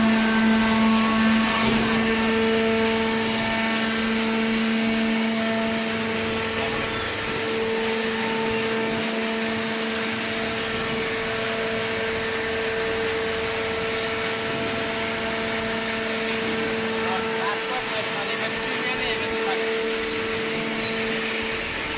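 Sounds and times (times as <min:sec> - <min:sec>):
baler machine hum: 0:00.0 - 0:21.9
constant machine whine: 0:00.0 - 0:21.9.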